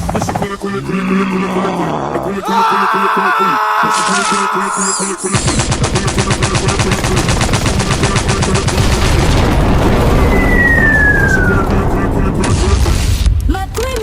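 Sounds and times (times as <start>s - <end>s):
machine-gun fire: 5.4s - 13.2s
whistle falling in pitch: 10.3s - 11.6s.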